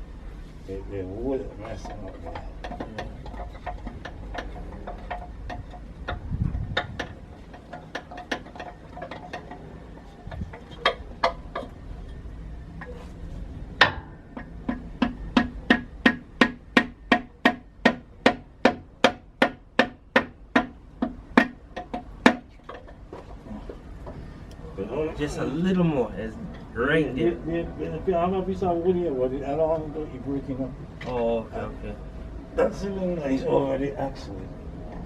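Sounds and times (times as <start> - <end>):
hammer tapping on wood: 10.8 - 11.8, 13.8 - 23.3.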